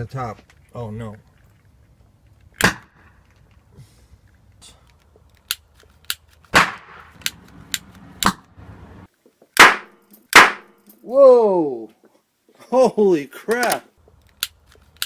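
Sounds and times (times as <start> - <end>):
gas igniting in sharp pops: 6.5 - 8.5, 9.6 - 10.7.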